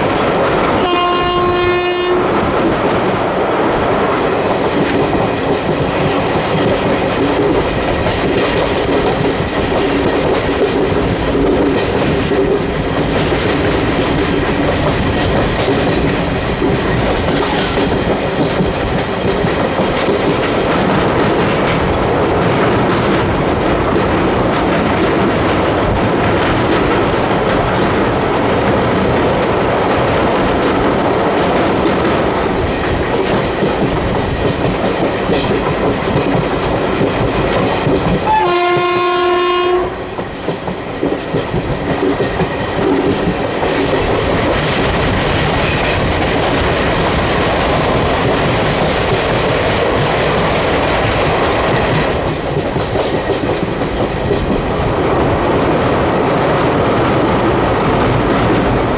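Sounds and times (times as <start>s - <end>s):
train coaches rumbling: 0.0s - 58.9s
wheels clicking over rail joints: 1.8s - 58.9s.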